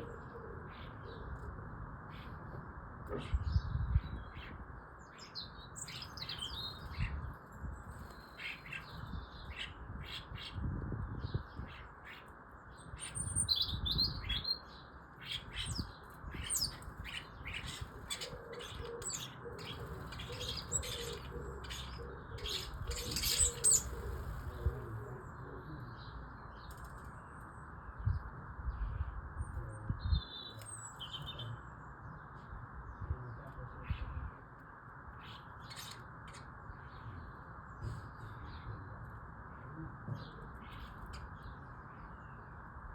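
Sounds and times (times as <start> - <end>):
starlings chattering: 4.4 - 7.2, 13.0 - 27.3.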